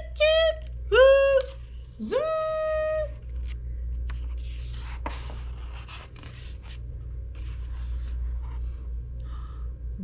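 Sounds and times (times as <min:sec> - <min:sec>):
steady low hum: 0:00.0 - 0:10.0
paper rustling and scraping: 0:03.3 - 0:08.9.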